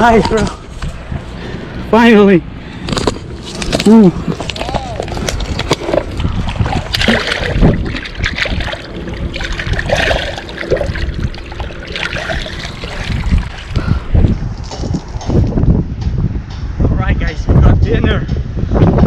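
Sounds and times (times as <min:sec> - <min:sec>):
wind buffeting microphone: 0:00.0 - 0:19.0
splashing water: 0:03.8 - 0:15.2.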